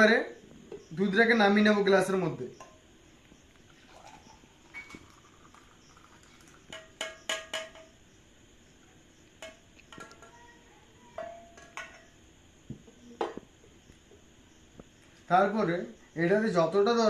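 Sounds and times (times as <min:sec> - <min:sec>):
kitchenware clinking against glass: 0:11.2 - 0:12.1.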